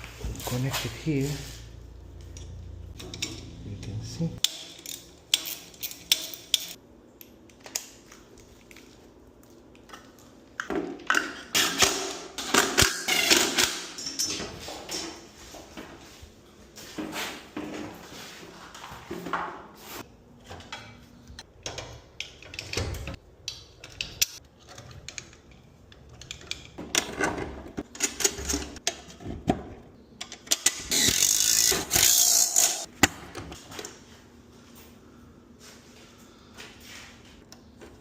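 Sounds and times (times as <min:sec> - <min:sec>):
tools and metal parts clicking: 0:02.2 - 0:07.8, 0:11.1 - 0:15.1, 0:20.6 - 0:29.3, 0:30.2 - 0:32.9.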